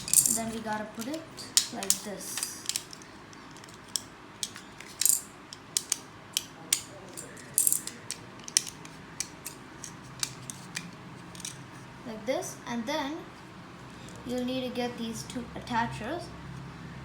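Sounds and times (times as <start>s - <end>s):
plastic bricks clicking: 0.0s - 11.6s.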